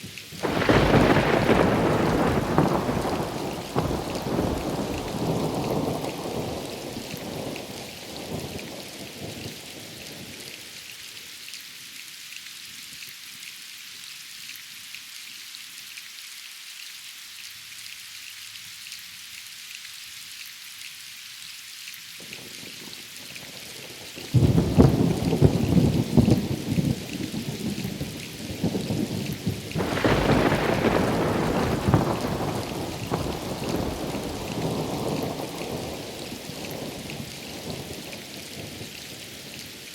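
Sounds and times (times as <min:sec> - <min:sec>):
steady rain: 0:00.0 - 0:39.9
loud thunderclap: 0:00.4 - 0:07.3, 0:24.4 - 0:27.0, 0:29.8 - 0:38.0
thunder rumbling: 0:00.4 - 0:08.6, 0:24.4 - 0:28.1, 0:28.7 - 0:38.9.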